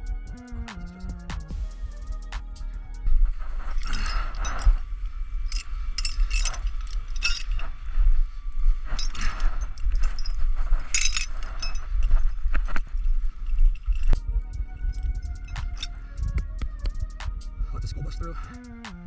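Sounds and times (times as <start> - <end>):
steady low rumble: 0.0 - 19.0
metallic clinks and rattles: 3.6 - 14.3, 14.9 - 16.4.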